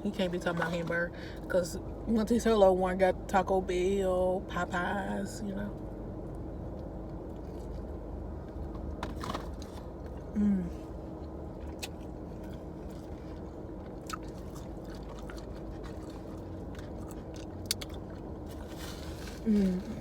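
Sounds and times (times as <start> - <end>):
steady low hum: 0.0 - 20.0
chewing with wet lip smacks: 6.3 - 9.0, 11.2 - 18.5
humming vocal sound: 10.3 - 10.8, 19.4 - 20.0.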